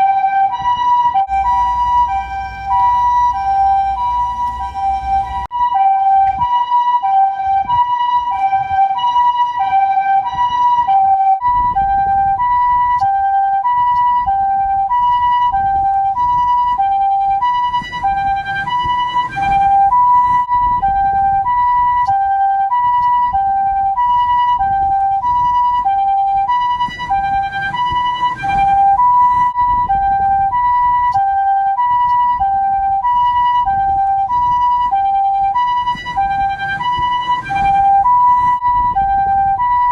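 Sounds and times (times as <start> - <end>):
ambulance two-tone siren: 0.0 - 39.9
low road rumble: 0.0 - 39.9.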